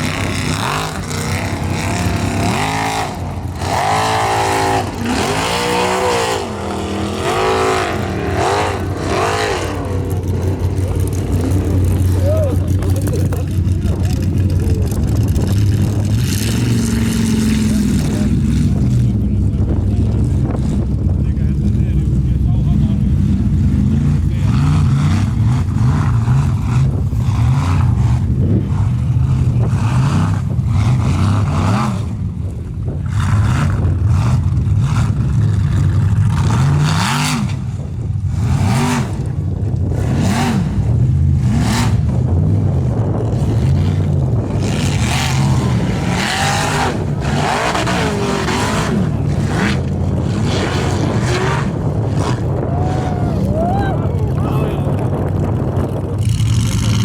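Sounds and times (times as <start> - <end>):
buggy engine revving hard: 0.0 - 57.0.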